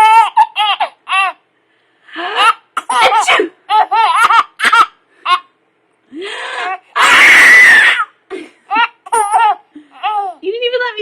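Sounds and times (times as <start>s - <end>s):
baby laughing: 0.0s - 1.4s, 2.3s - 5.5s, 8.3s - 10.4s
adult sneezing: 2.8s - 3.6s.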